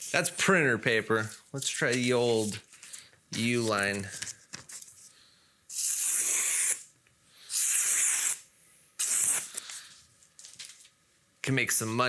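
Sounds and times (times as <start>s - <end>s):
machete slicing paper: 5.7s - 6.9s, 7.5s - 8.4s, 9.0s - 9.7s.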